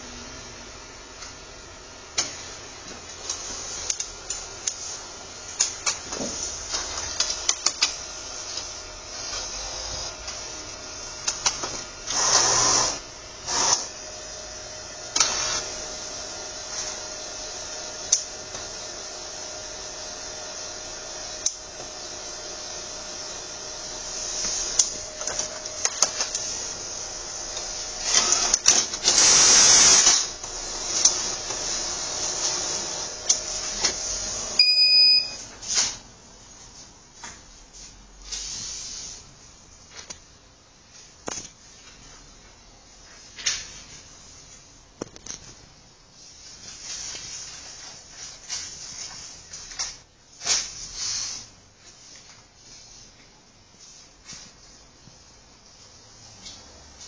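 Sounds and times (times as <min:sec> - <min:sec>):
printer motor whirring: 0:03.1 - 0:34.6.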